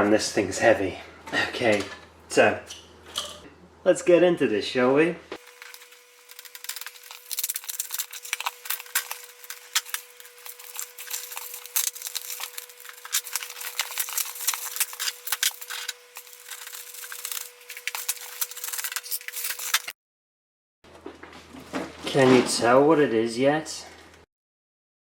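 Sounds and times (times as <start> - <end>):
cardboard box packaging rustling: 5.4 - 19.9.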